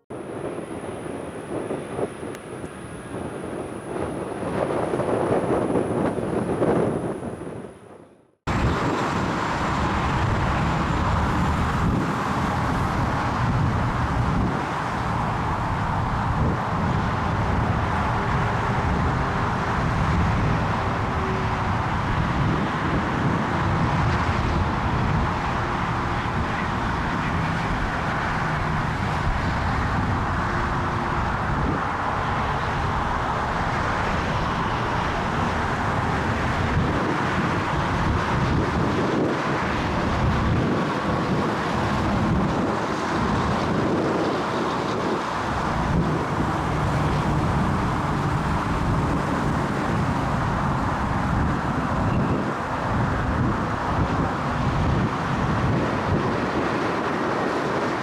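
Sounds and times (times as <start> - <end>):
jet aircraft engine: 0.0 - 58.0
wind buffeting microphone: 0.0 - 58.0.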